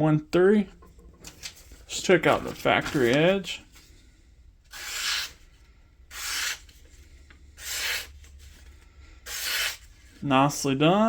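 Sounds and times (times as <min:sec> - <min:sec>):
blade slicing through paper: 0:04.7 - 0:05.4, 0:06.1 - 0:06.8, 0:07.6 - 0:08.7, 0:09.3 - 0:09.9.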